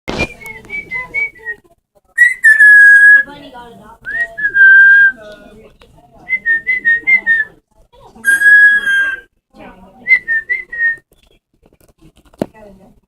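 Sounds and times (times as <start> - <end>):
parrot chirping: 2.2 - 3.3, 8.2 - 9.3
parrot whistling: 2.2 - 3.3, 8.2 - 9.3.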